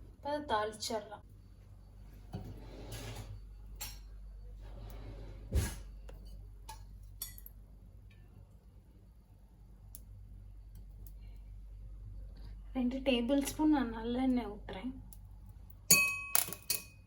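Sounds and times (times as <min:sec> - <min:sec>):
steady low hum: 0:00.0 - 0:16.2
kitchen utensils clinking: 0:15.9 - 0:17.0.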